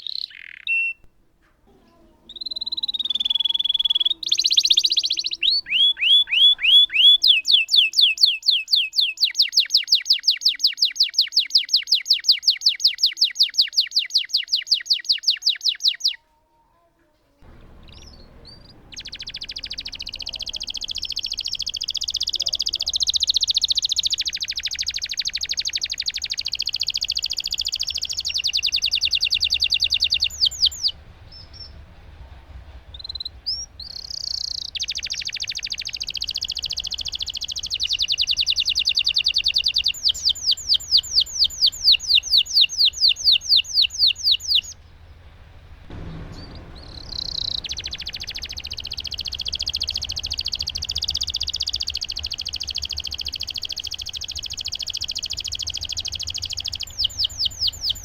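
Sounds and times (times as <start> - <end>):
canary singing: 0.0 - 1.1, 1.8 - 16.2, 17.4 - 31.7, 33.0 - 44.9, 45.9 - 58.0.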